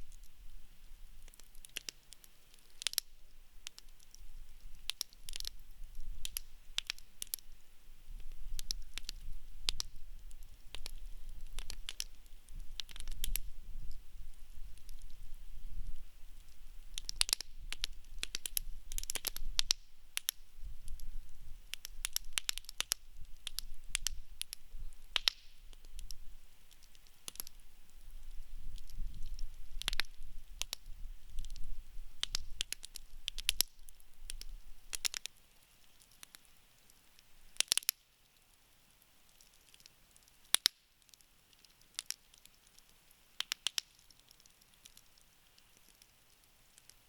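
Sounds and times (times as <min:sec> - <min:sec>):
campfire crackling: 0:00.0 - 0:47.0.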